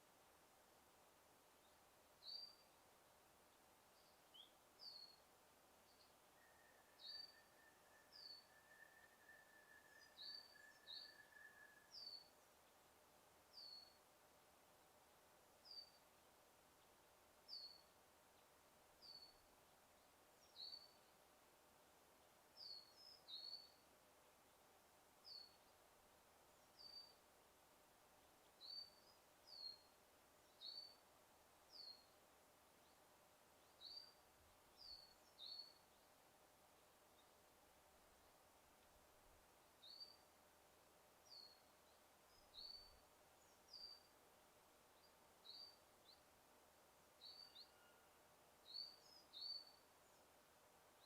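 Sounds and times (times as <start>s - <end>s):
faint background hiss: 0.0s - 51.0s
songbirds chirping: 0.0s - 51.0s.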